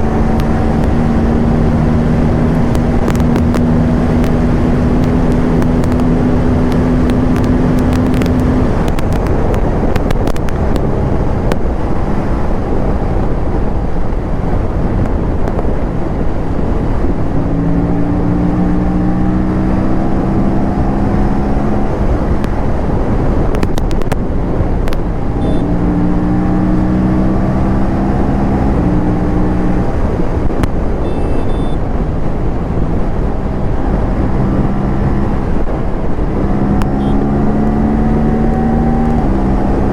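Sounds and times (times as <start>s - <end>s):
motorcycle engine accelerating: 0.0s - 11.6s, 17.2s - 22.8s, 23.4s - 30.1s, 32.8s - 39.9s
wind rush: 0.0s - 39.9s.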